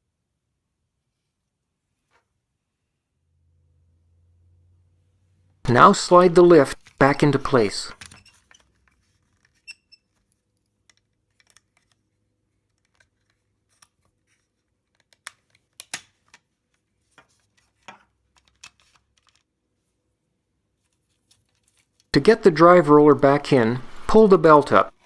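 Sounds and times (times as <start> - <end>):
plastic toy parts clicking: 10.8 - 12.0.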